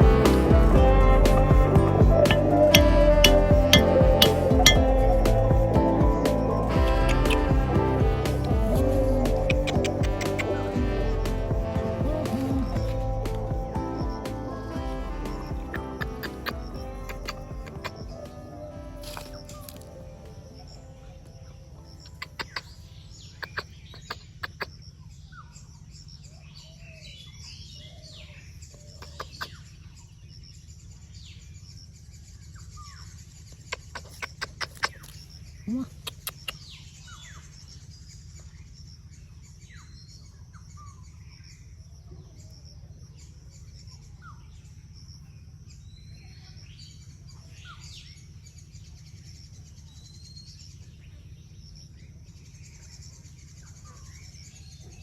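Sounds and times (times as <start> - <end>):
small birds chirping: 0.0 - 55.0
steady low hum: 0.0 - 55.0.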